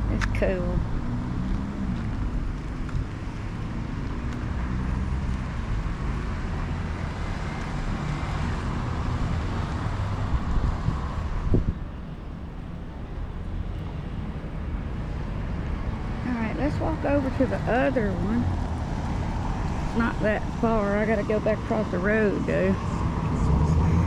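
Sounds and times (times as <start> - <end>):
wind on microphone: 9.3 - 11.9
car passing by: 17.0 - 24.0.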